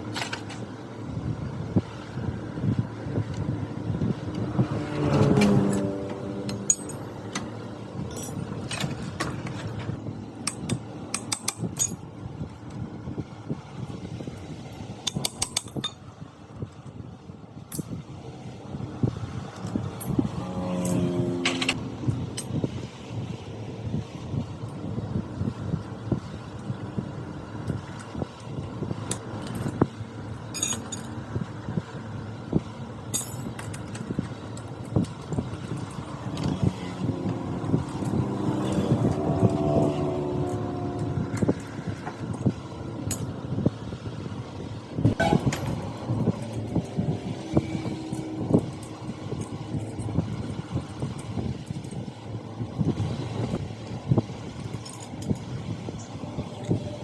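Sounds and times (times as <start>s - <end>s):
engine tone: 4.4s - 9.0s, 19.6s - 22.5s, 35.8s - 43.4s, 45.0s - 50.6s
metallic clicks of tools: 5.1s - 12.0s, 15.0s - 16.0s, 45.1s - 52.0s
metallic clinking: 5.4s - 12.0s, 15.0s - 16.0s, 30.5s - 31.2s, 45.1s - 52.0s
motorcycle engine running: 35.5s - 42.3s.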